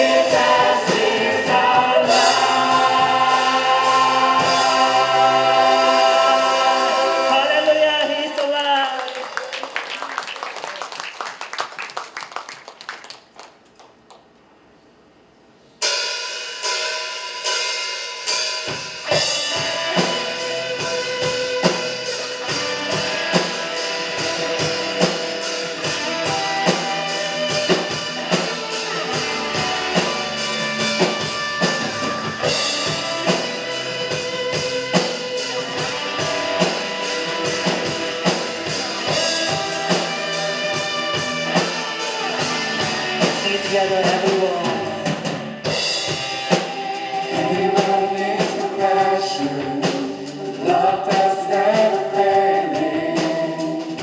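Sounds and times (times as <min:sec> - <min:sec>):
drum kit beat: 0:00.0 - 0:07.7, 0:15.9 - 0:54.0
guitar: 0:00.0 - 0:07.8, 0:18.6 - 0:54.0
worship band playing: 0:00.0 - 0:11.7, 0:15.8 - 0:54.0.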